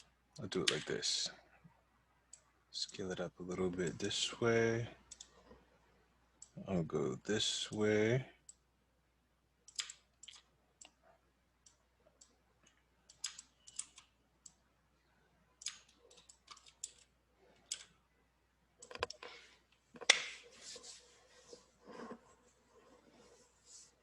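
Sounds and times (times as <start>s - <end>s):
mouse and keyboard clicking: 9.7s - 11.0s, 13.1s - 14.6s, 15.6s - 17.9s.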